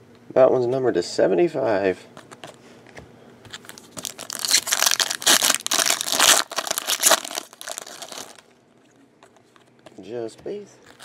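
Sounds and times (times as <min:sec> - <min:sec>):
wrapper tearing and crinkling: 0:03.6 - 0:08.4.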